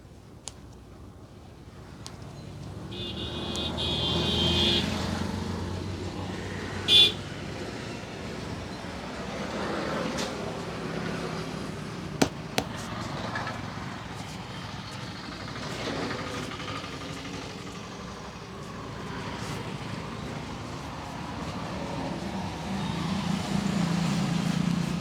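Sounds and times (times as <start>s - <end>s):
roadside traffic noise: 1.8s - 9.8s
sharp snaps: 12.2s - 12.8s.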